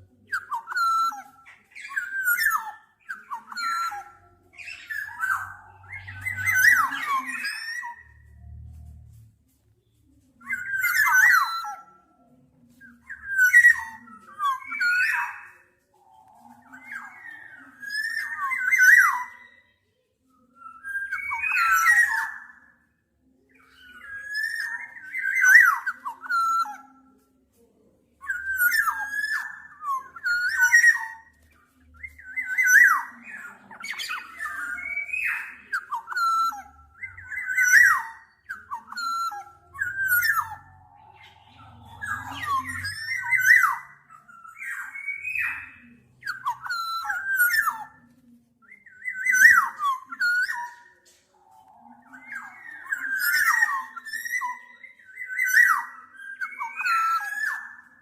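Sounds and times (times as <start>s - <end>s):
bird fluty whistles: 0.0s - 9.1s.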